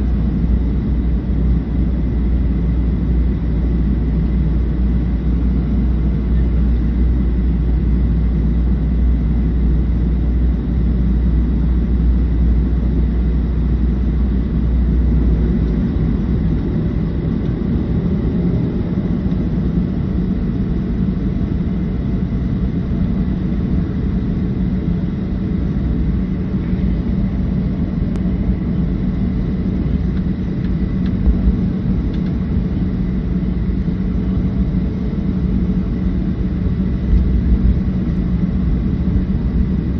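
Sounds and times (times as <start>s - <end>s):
deep low rumble: 12.7s - 39.9s
jet engine cabin rush: 13.6s - 39.9s.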